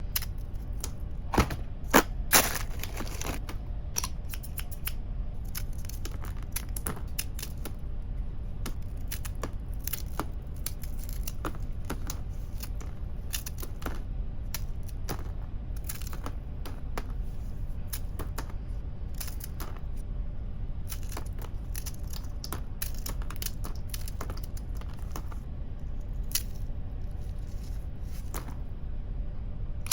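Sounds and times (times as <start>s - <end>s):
scissors snipping crunchy biscuits: 0.0s - 7.8s, 8.5s - 17.2s, 17.8s - 19.9s, 20.8s - 25.4s, 26.1s - 26.6s
steady low hum: 0.0s - 29.9s.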